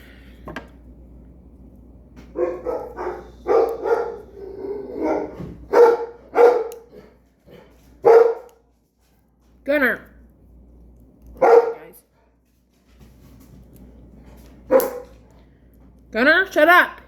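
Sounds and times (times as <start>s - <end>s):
dog barking: 2.4s - 7.1s, 8.0s - 8.6s, 11.4s - 11.9s, 14.7s - 15.2s.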